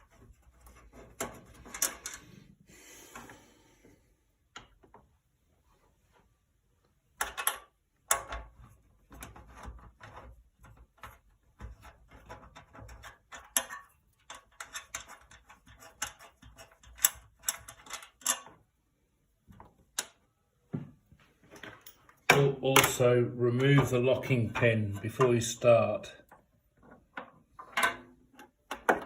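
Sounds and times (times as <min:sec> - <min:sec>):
small hard parts clicking: 0:09.2 - 0:18.6.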